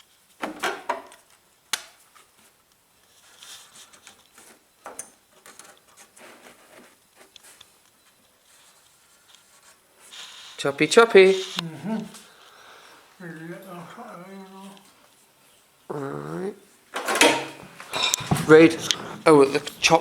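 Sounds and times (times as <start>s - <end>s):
handling knocks and clicks: 17.0s - 20.0s.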